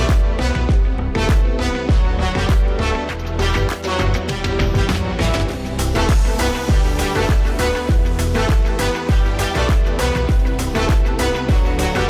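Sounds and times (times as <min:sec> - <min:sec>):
deep kick drum beat: 0:00.0 - 0:02.8, 0:05.9 - 0:12.0
held synth notes: 0:00.0 - 0:12.0.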